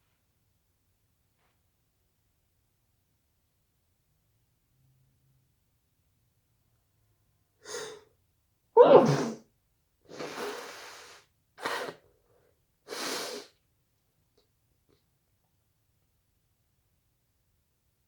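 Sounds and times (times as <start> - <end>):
person sneezing: 8.8 - 9.4, 10.1 - 11.0, 11.6 - 12.0
sharp intake of breath: 10.1 - 11.9, 12.9 - 13.5.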